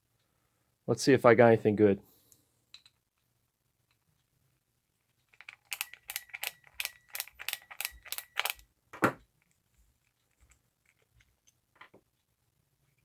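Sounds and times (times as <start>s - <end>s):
utility knife metal clicking: 5.4s - 8.6s.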